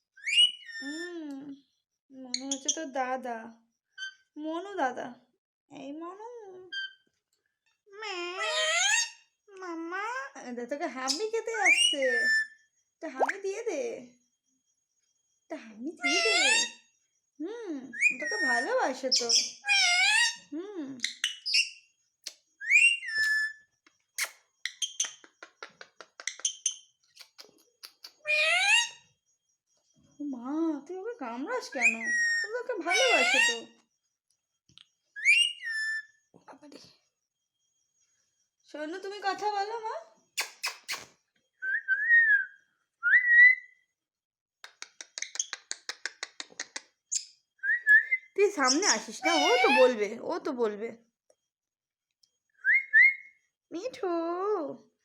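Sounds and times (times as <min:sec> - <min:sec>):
parrot whistling: 0:18.0 - 0:20.4, 0:22.6 - 0:23.6, 0:28.3 - 0:29.0, 0:31.8 - 0:33.6, 0:35.2 - 0:36.0, 0:41.6 - 0:43.8, 0:47.6 - 0:49.9, 0:52.6 - 0:53.3
parrot chirps and clicks: 0:21.0 - 0:29.0, 0:40.3 - 0:41.2, 0:44.6 - 0:49.9.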